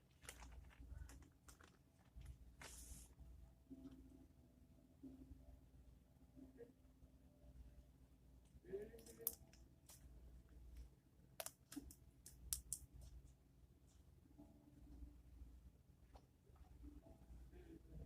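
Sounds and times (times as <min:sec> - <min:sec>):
slime clicking and popping: 0:11.4 - 0:12.9.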